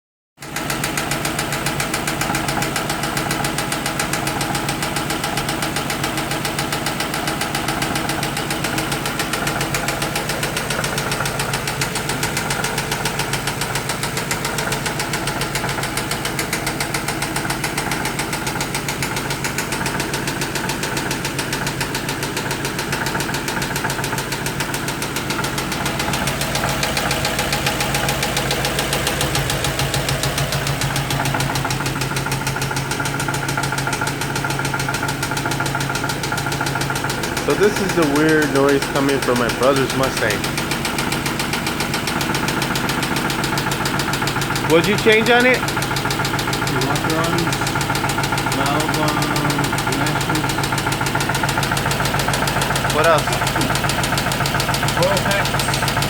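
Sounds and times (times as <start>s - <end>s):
car engine idling: 0.4s - 56.0s
rapid engine tapping: 0.4s - 56.0s.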